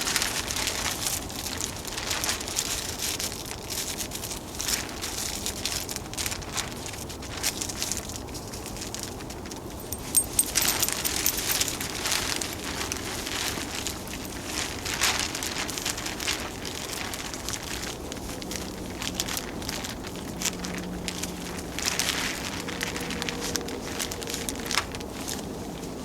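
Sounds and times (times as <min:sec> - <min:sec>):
rustling and crackling: 0:09.8 - 0:17.2.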